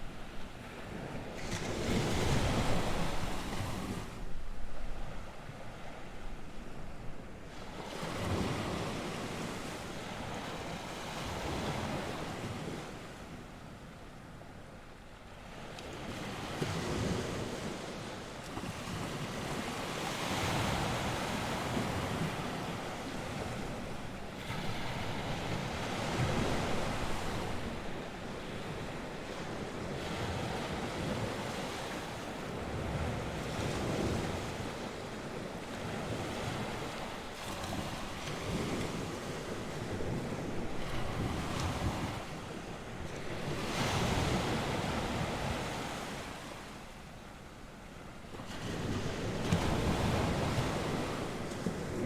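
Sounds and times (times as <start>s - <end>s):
waves washing onto shore: 0.0s - 52.0s
wind blowing over microphone: 20.5s - 46.5s.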